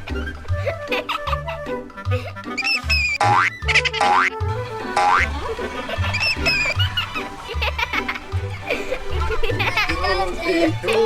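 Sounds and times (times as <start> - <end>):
bouncy background music: 0.0 - 11.0
cartoon boing: 2.6 - 4.4, 5.0 - 5.3.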